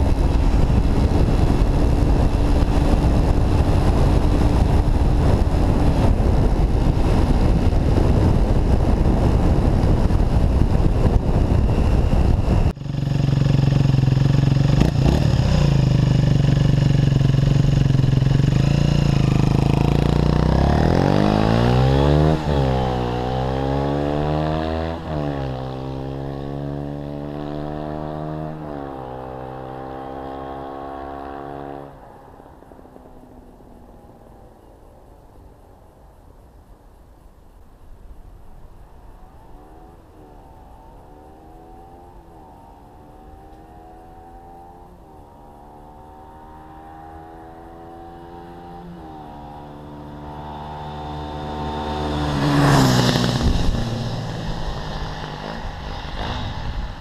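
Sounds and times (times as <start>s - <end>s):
wind rushing: 0.0s - 13.9s, 14.8s - 26.6s, 50.5s - 57.0s
motorcycle engine accelerating: 0.0s - 34.6s, 39.0s - 57.0s.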